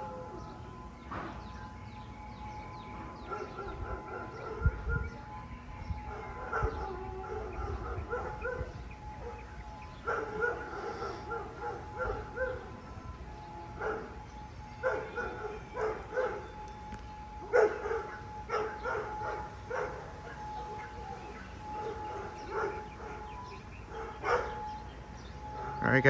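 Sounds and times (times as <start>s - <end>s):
distant warning siren: 0.0s - 26.0s
dog barking: 3.2s - 5.1s, 6.2s - 9.4s, 10.0s - 12.7s, 13.8s - 14.2s, 14.8s - 16.6s, 17.4s - 24.8s.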